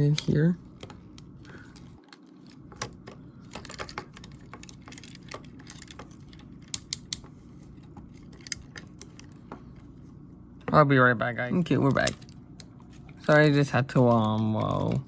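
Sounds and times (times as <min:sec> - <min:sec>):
low steady hum: 0:00.0 - 0:15.0
plastic parts clicking: 0:00.1 - 0:07.3, 0:08.1 - 0:09.4.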